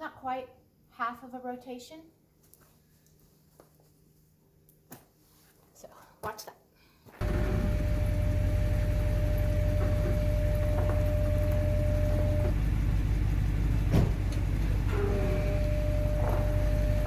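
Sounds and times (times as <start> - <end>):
steady high tone: 7.2 - 13.4, 14.3 - 17.0
pickup engine running: 7.2 - 17.0.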